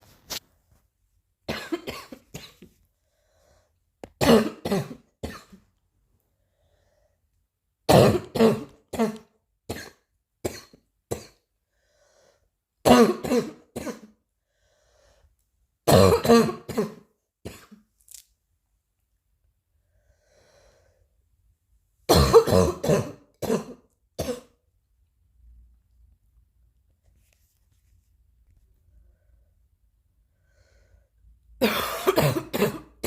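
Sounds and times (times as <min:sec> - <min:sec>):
person coughing: 0:01.5 - 0:02.8, 0:04.2 - 0:05.7, 0:07.9 - 0:11.4, 0:12.9 - 0:14.2, 0:15.9 - 0:17.9, 0:22.1 - 0:24.6, 0:31.6 - 0:33.0.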